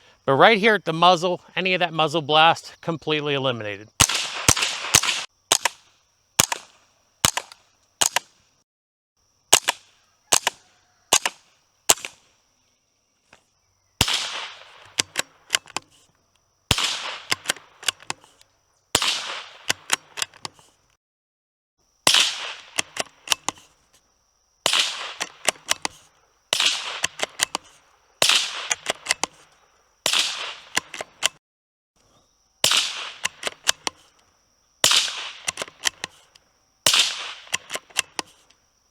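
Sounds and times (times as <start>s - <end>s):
rifle shots with echo: 4.0s - 8.3s, 9.5s - 12.2s, 14.0s - 15.6s, 16.7s - 18.3s, 19.0s - 20.3s, 22.0s - 23.6s, 24.6s - 31.4s, 32.6s - 34.0s, 34.8s - 36.2s, 36.8s - 38.3s.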